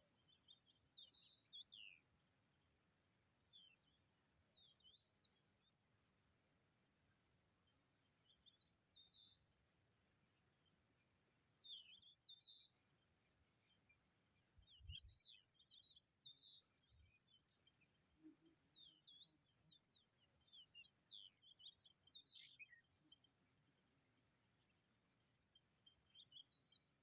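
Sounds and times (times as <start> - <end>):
small bird chirping: 11.6 - 12.8, 14.6 - 23.5, 24.6 - 27.0.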